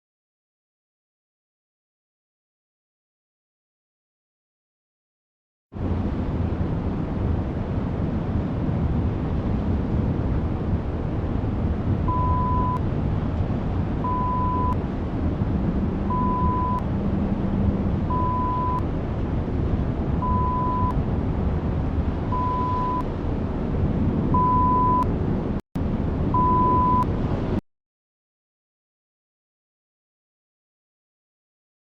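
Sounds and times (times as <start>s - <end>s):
heavy wind rushing: 5.8s - 27.6s
short steady beeps: 12.1s - 12.8s, 14.1s - 14.8s, 16.1s - 16.8s, 18.1s - 18.8s, 20.2s - 20.9s, 22.3s - 23.0s, 24.4s - 25.0s, 26.4s - 27.1s.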